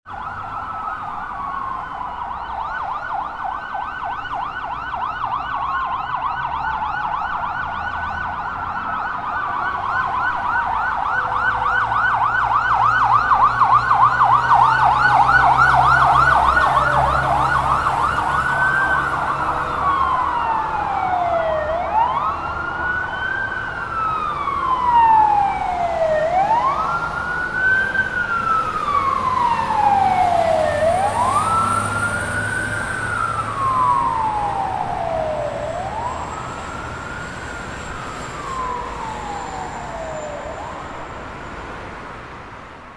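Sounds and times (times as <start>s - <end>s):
fire truck sirens wailing: 0.0s - 42.9s.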